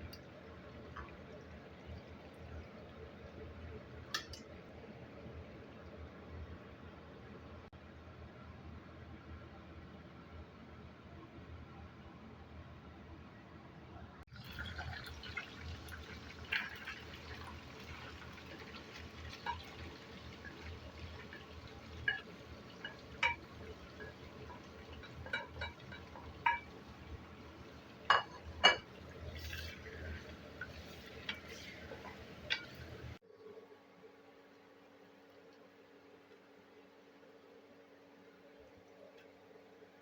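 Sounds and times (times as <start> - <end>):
steady cooking hiss: 14.3 - 33.3
utensils clinking on cookware: 21.3 - 26.8, 28.1 - 33.1.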